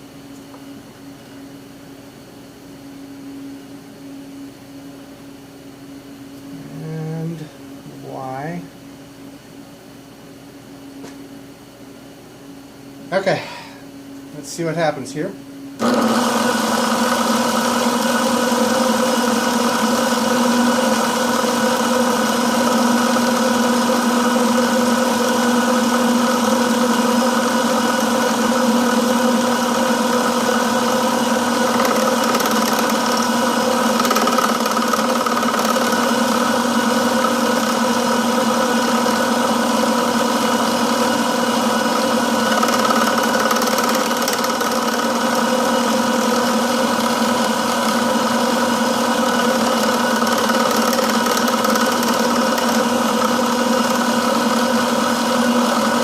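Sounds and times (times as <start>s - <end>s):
milling machine motor humming: 15.8s - 56.0s.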